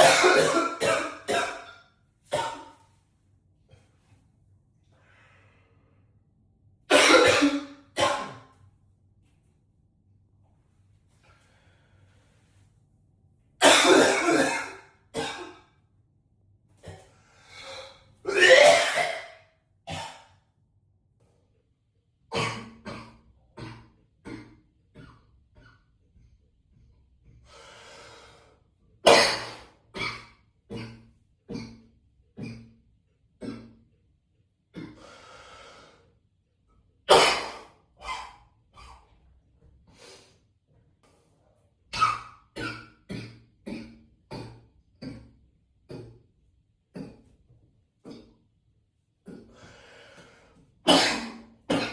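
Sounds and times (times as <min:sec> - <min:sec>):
man coughing: 0:00.0 - 0:01.7, 0:06.9 - 0:08.4, 0:13.6 - 0:15.6, 0:18.3 - 0:19.3, 0:50.9 - 0:51.9.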